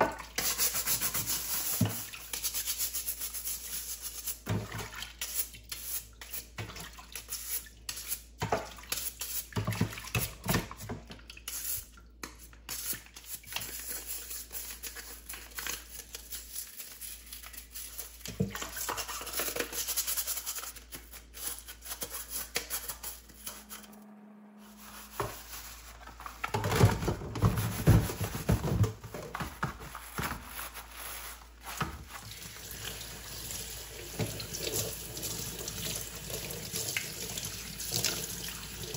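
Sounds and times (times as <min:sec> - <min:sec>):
brush scrubbing: 0:00.4 - 0:04.4, 0:12.7 - 0:23.9, 0:24.6 - 0:26.6, 0:27.4 - 0:32.4.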